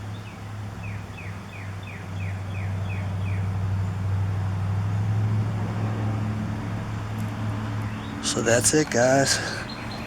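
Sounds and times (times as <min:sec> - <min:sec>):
bird chirping: 0:07.8 - 0:10.0.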